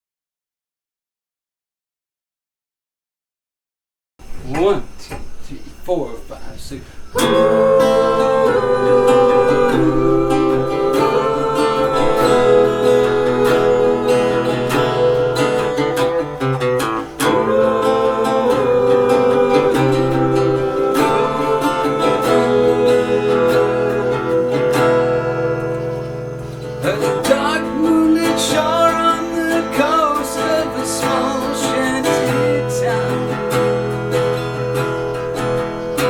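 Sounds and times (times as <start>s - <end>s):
strummed acoustic guitar: 7.2s - 36.0s.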